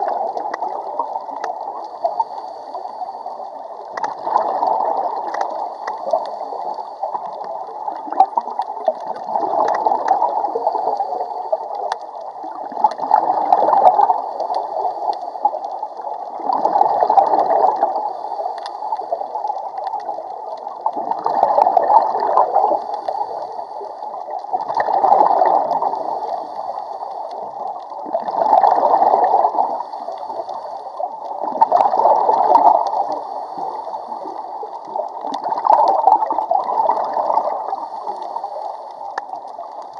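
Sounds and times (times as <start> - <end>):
steady bubbly background: 0.0 - 39.9
diver exhaling bubbles: 4.0 - 6.3, 7.8 - 11.1, 12.4 - 14.6, 16.3 - 18.0, 20.9 - 23.0, 24.5 - 26.5, 28.0 - 30.3, 31.4 - 38.3.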